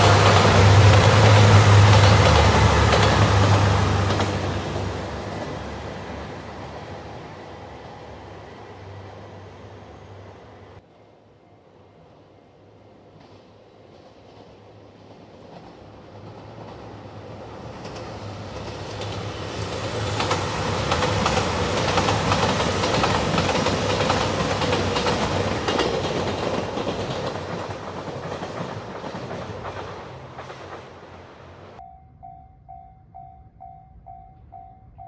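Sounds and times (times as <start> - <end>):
wheels clicking over rail joints: 0.0 - 5.6, 20.2 - 31.1
diesel train engine: 0.0 - 10.9, 14.8 - 35.0.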